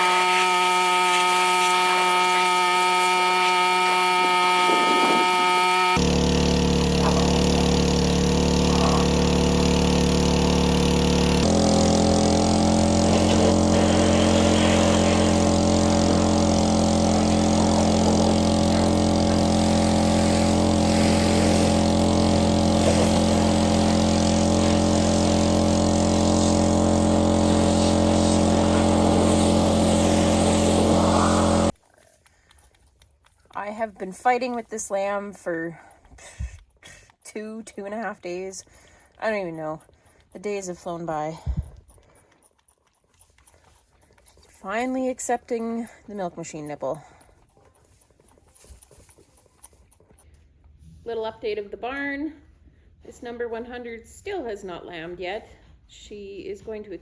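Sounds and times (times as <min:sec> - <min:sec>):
engine running: 0:00.0 - 0:31.8.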